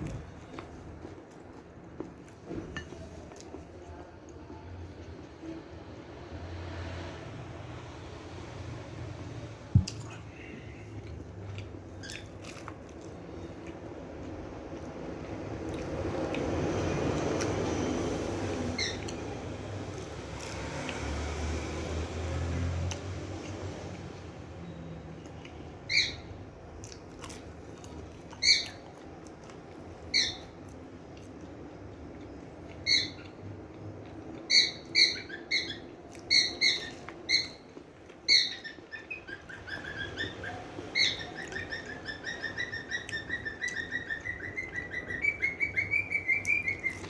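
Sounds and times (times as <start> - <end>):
small bird chirping: 34.5 - 47.0.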